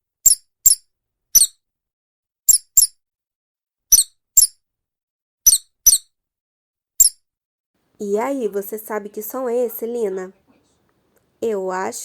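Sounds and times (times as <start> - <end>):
small bird chirping: 0.2 - 1.6, 2.5 - 3.0, 3.9 - 4.6, 5.5 - 6.1, 7.0 - 7.2.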